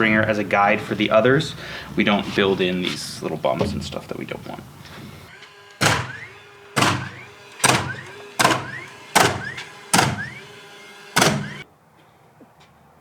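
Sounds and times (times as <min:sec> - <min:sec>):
sharp ringing knocks: 0:05.8 - 0:10.4, 0:11.2 - 0:11.6.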